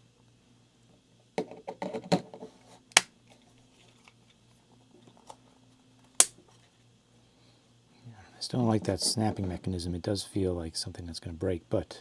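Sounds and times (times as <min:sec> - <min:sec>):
sharp plastic snap: 0:02.9 - 0:03.1.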